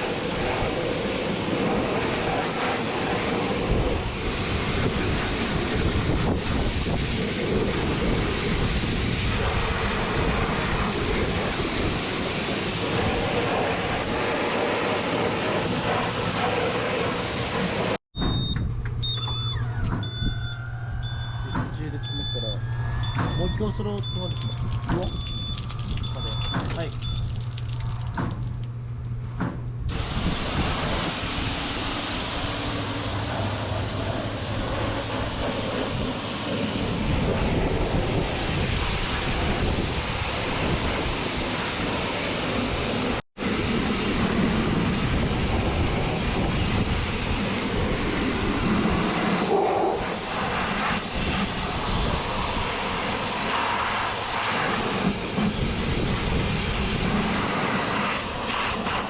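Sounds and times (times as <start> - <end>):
pressure washer spraying: 0.0 - 18.0, 29.9 - 59.0.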